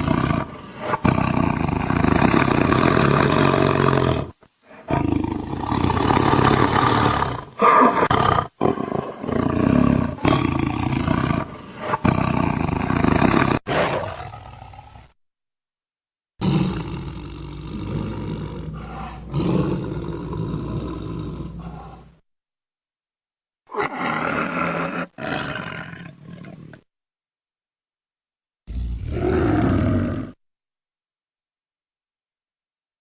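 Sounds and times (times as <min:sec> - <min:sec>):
tiger growling and roaring: 0:00.0 - 0:15.2, 0:16.4 - 0:22.2, 0:23.7 - 0:26.9, 0:28.7 - 0:30.4.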